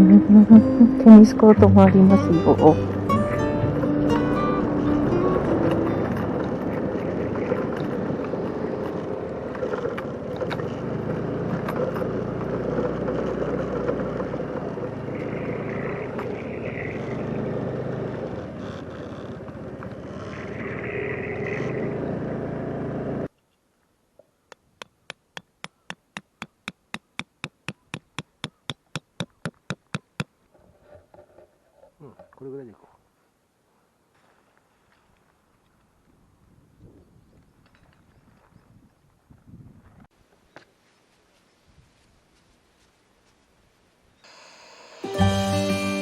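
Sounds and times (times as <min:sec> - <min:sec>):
scooter engine running: 0:03.2 - 0:23.3
sharp taps: 0:24.5 - 0:30.3
wind noise on microphone: 0:36.0 - 0:40.1.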